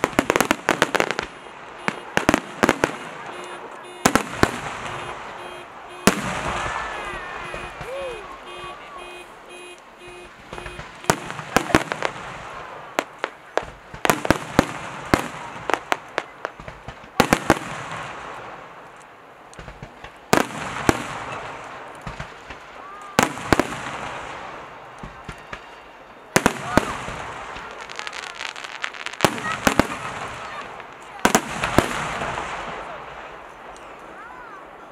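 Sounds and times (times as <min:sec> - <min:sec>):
fireworks shells bursting: 0:00.0 - 0:15.1
fireworks crackling: 0:00.0 - 0:34.9.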